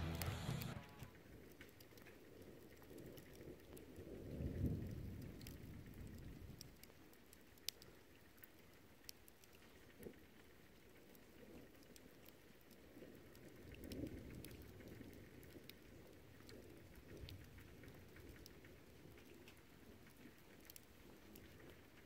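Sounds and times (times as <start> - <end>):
soft low rumble: 0.0 - 1.1
raindrops ticking on hard surface: 0.0 - 22.0.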